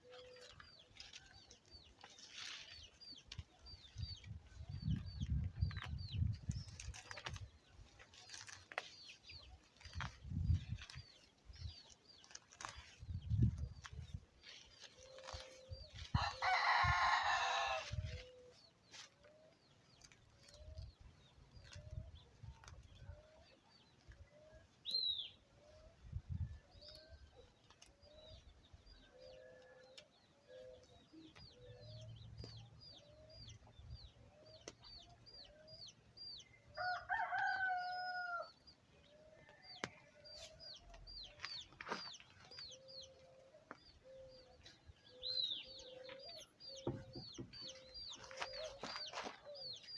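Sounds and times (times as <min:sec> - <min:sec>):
small birds chirping: 0:00.0 - 0:17.0, 0:17.8 - 0:49.9
rooster crowing: 0:16.2 - 0:17.9, 0:36.8 - 0:38.5
chickens clucking: 0:39.4 - 0:49.9.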